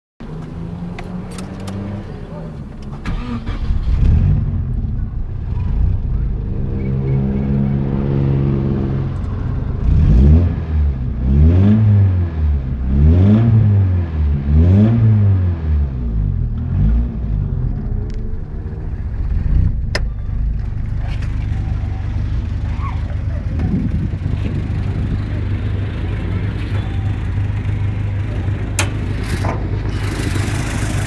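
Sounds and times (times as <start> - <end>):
car engine running and revving: 0.2 - 31.0
sharp click: 28.8 - 30.6.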